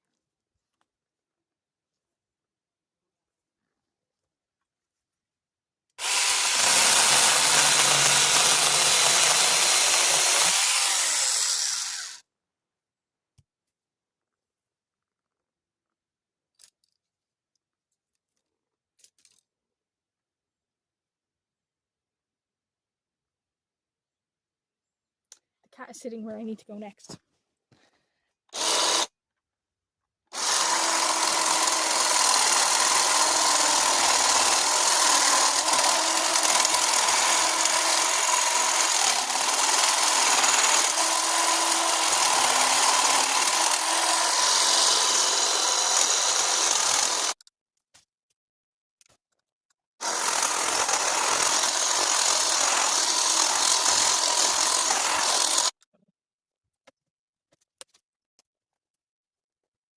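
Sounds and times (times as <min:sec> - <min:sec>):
power cutting tool cutting bush: 0:06.0 - 0:12.2, 0:28.6 - 0:29.1, 0:30.3 - 0:47.4, 0:50.0 - 0:55.7.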